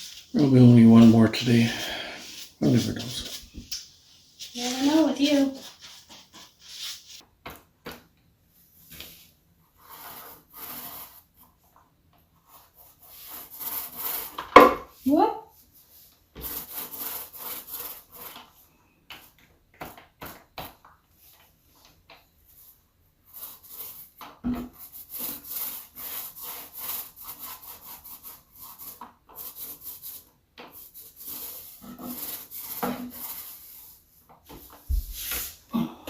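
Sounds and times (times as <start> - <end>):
paint brush rubbing strokes on wood: 0.0 - 7.2, 9.8 - 11.3, 12.5 - 14.4, 15.5 - 18.4, 23.3 - 24.2, 24.8 - 35.7.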